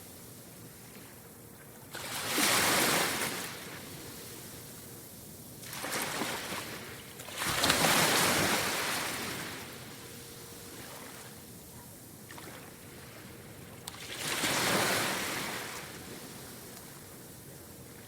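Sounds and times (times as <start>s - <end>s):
surf hiss: 0.0s - 18.0s.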